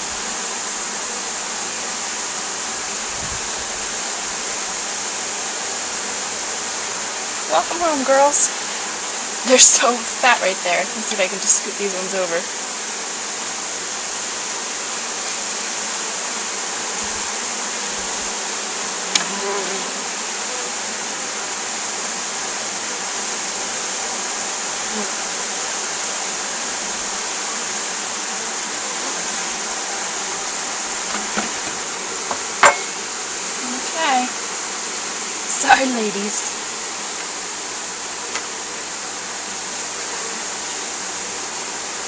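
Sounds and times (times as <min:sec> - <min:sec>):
honeybees buzzing: 0:00.0 - 0:42.0
sharp knock: 0:31.1 - 0:33.0.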